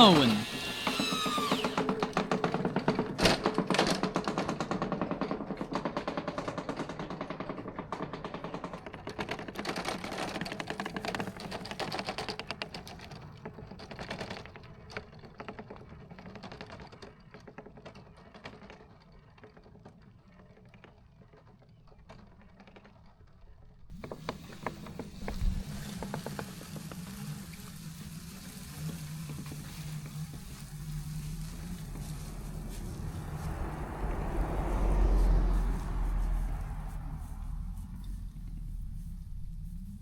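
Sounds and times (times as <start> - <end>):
low motor hum: 0.0 - 2.0, 23.9 - 40.0.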